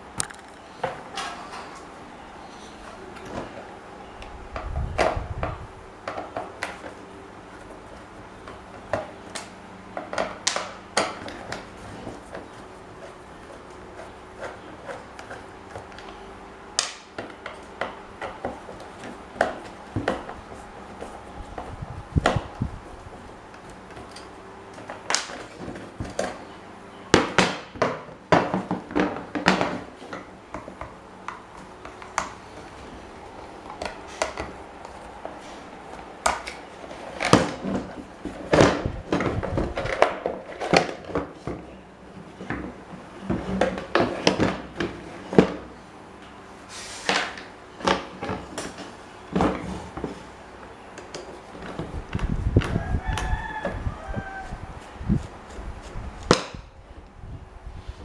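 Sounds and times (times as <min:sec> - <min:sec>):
handling noise: 0:00.0 - 0:45.7.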